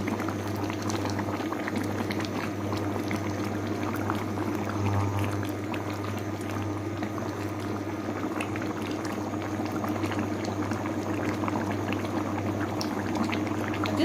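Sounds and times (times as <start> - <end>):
curry bubbling in a pot: 0.0 - 14.0
low hum: 4.6 - 6.7.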